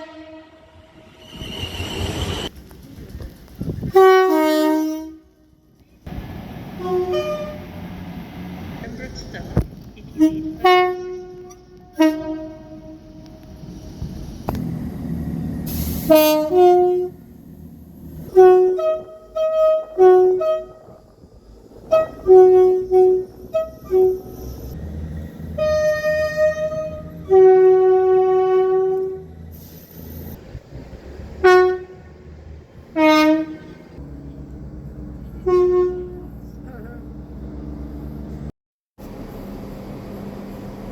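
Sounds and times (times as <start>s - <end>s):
two-tone train horn: 0.0s - 1.6s, 3.9s - 5.6s, 6.8s - 7.8s, 10.1s - 13.7s, 15.7s - 17.3s, 18.2s - 21.0s, 21.8s - 24.5s, 25.5s - 29.4s, 31.4s - 32.1s, 32.9s - 34.0s, 35.3s - 36.4s
low train rumble: 0.0s - 40.9s
brief hisses: 15.7s - 16.2s.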